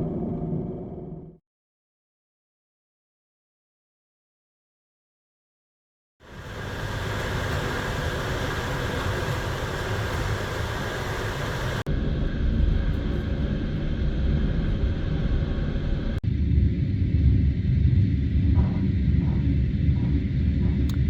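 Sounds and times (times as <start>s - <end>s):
passenger train rumbling: 6.2s - 21.0s.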